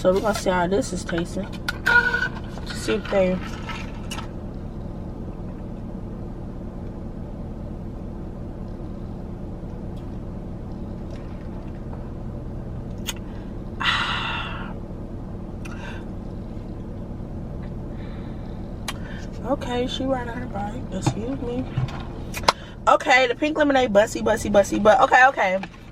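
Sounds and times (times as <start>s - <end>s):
car engine idling: 0.0s - 25.9s.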